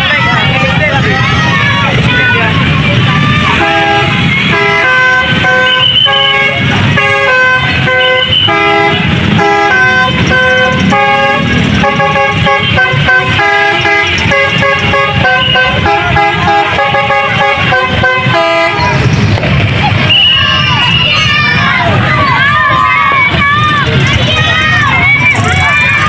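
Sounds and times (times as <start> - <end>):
multi-tone bus horn tune: 3.2 - 19.1.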